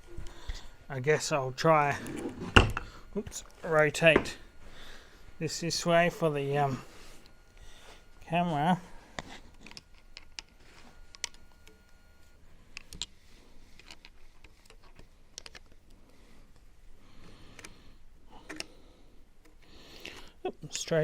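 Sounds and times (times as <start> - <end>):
small parts clicking and tapping: 9.5 - 11.8, 12.7 - 16.7.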